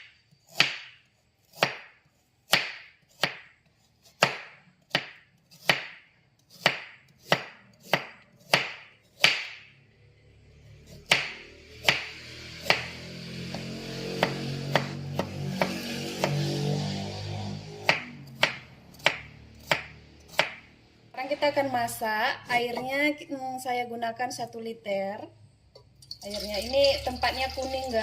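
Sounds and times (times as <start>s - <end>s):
knife chopping on cutting board: 0.5s - 9.6s, 11.1s - 12.9s, 17.8s - 20.6s.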